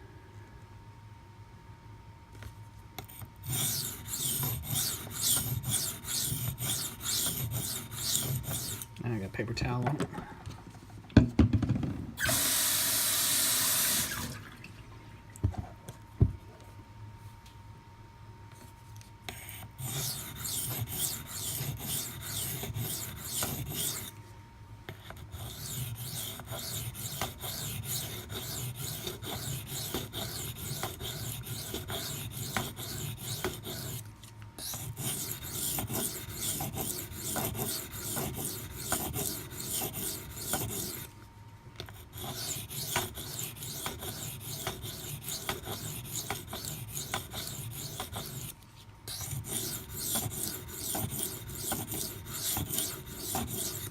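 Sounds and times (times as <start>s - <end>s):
knife scraping on whetstone: 3.1s - 8.9s, 19.3s - 24.1s, 25.0s - 34.0s, 34.6s - 41.1s, 42.0s - 53.9s.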